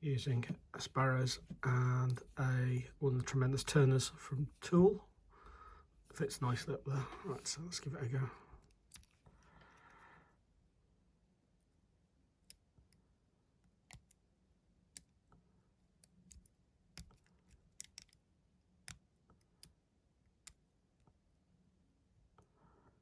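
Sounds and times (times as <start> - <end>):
lock pick clicking: 16.0 - 18.2.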